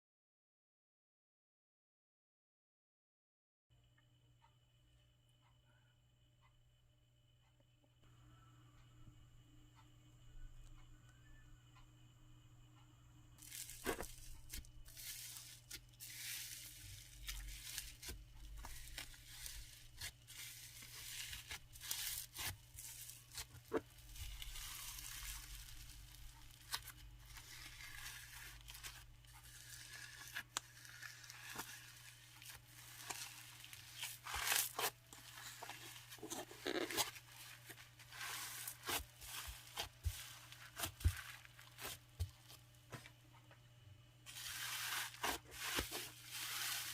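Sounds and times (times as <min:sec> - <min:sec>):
slime crackling and tearing: 0:13.4 - 0:42.0.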